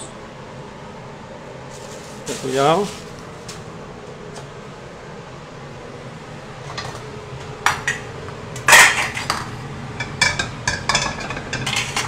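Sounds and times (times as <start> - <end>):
steady background hum: 0.0 - 12.0
metal utensils clinking on a wok: 8.7 - 12.0.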